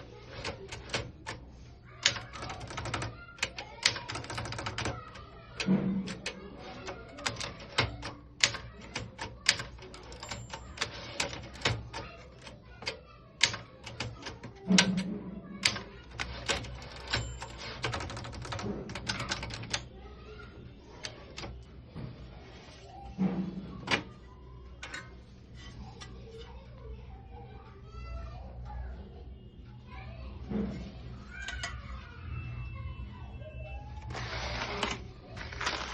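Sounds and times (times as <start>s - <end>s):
typewriter keys striking: 0.0s - 1.4s, 2.0s - 19.9s.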